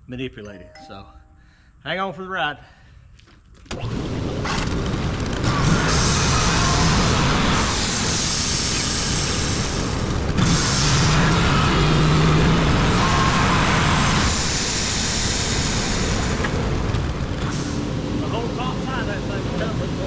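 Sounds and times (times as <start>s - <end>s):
sawmill engine humming: 3.8s - 20.0s.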